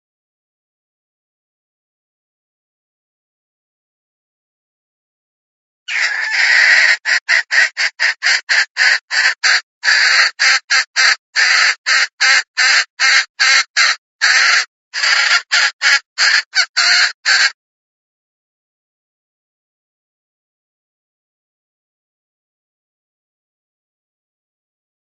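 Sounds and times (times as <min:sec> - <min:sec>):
hen clucking harshly: 0:05.9 - 0:17.6
longer hen call notes: 0:05.9 - 0:17.6.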